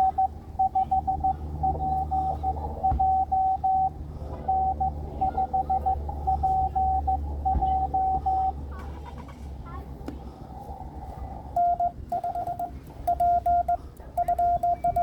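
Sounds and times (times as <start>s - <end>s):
fainter lower morse signal: 0.0s - 8.6s, 11.6s - 15.0s
morse code tone: 0.0s - 8.6s, 11.6s - 15.0s
steady low hum: 0.0s - 15.0s.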